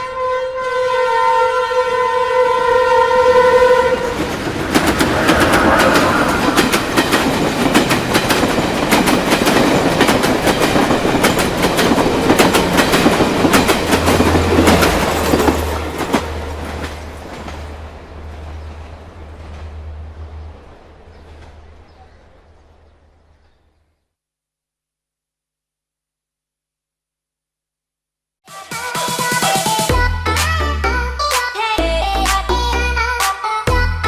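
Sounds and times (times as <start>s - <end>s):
train horn: 0.0s - 7.0s
train wheels clacking: 4.1s - 21.8s.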